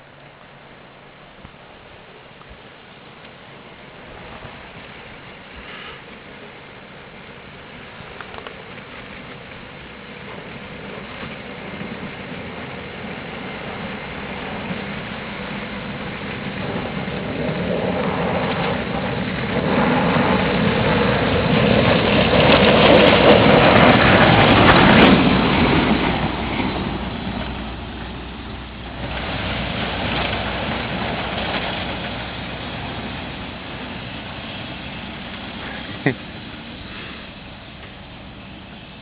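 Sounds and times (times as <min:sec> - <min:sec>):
diesel engine running: 0:00.0 - 0:39.0
plough blades scraping snow: 0:03.9 - 0:39.0.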